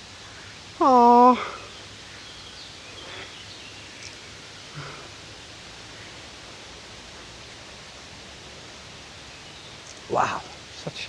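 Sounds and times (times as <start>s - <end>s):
outdoor background hiss: 0.0s - 11.0s.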